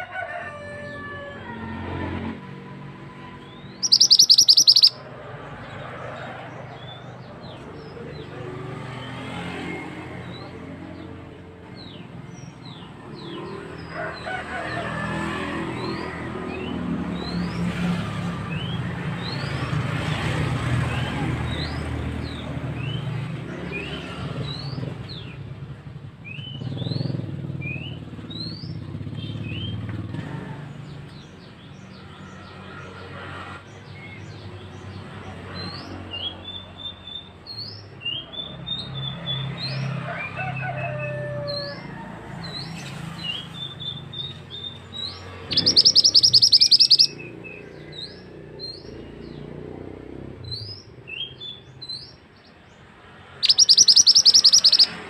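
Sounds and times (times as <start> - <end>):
bird calling in sharp chirps: 3.4 - 5.0, 43.3 - 49.0, 53.3 - 55.0.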